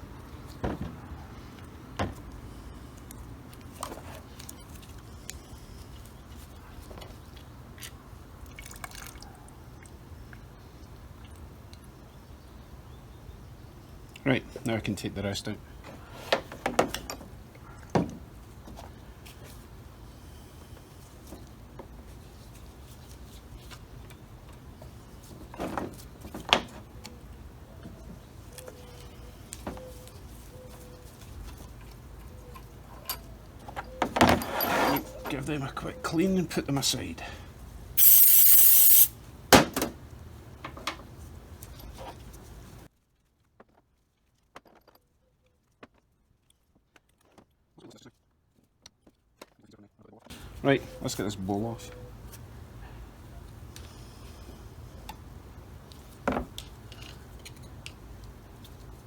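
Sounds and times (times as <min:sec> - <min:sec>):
steady hiss: 0:38.0 - 0:39.2.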